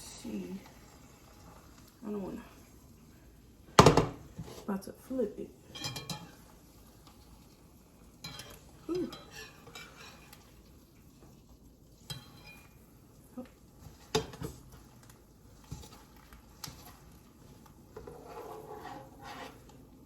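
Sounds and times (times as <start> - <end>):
metal spatula scraping frying pan: 5.7 - 7.4, 8.2 - 10.7, 12.0 - 12.9, 15.5 - 19.9.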